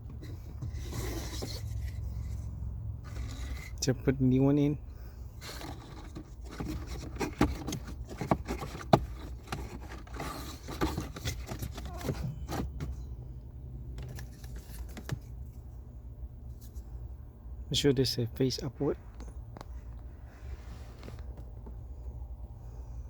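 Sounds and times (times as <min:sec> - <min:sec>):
plastic scraping and rustling: 0:00.0 - 0:02.4, 0:03.0 - 0:03.8, 0:05.4 - 0:13.0, 0:14.0 - 0:15.4.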